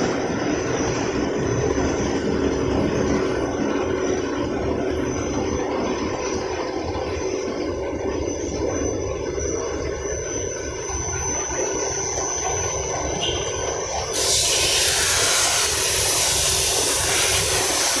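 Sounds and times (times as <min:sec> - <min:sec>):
printing machine rumble and whine: 0:00.0 - 0:18.0
loud steady hiss: 0:14.0 - 0:18.0.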